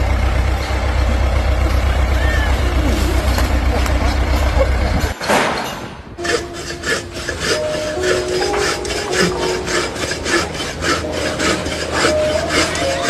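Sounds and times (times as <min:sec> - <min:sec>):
rhythmic rasping strokes: 0:06.2 - 0:13.0.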